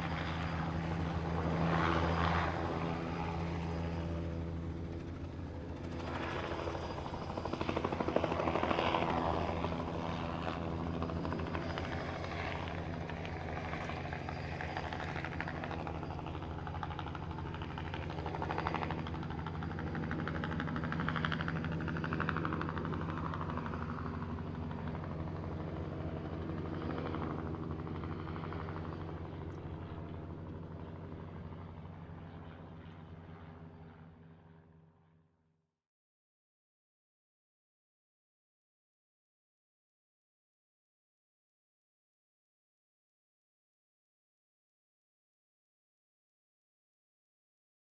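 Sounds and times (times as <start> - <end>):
helicopter rotor and engine: 0.0 - 35.3.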